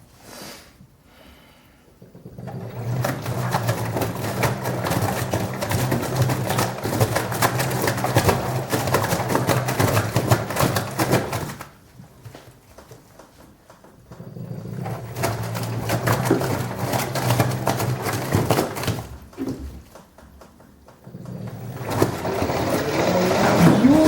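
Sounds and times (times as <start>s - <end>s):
washing machine motor hum: 2.1s - 11.4s, 14.2s - 19.0s, 21.0s - 24.0s.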